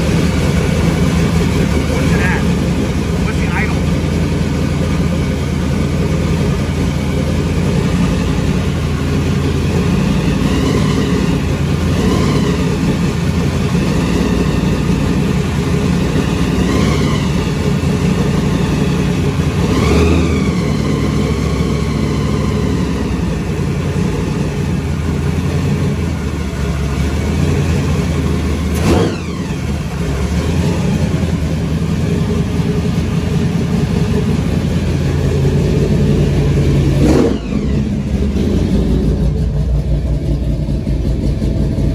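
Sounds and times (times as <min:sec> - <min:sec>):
car engine revving: 0:00.0 - 0:41.9.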